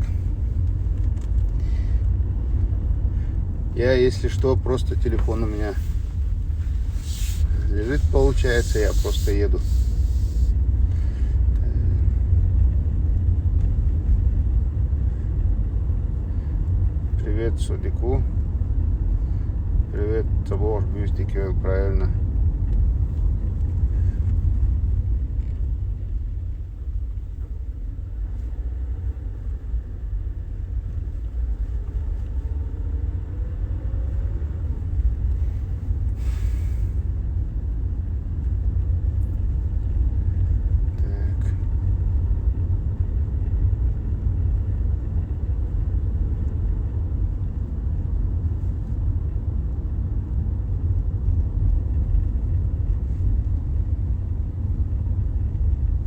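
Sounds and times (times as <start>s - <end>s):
car driving rumble inside cabin: 0.0s - 56.0s
short hiss: 6.8s - 10.6s, 36.2s - 37.0s.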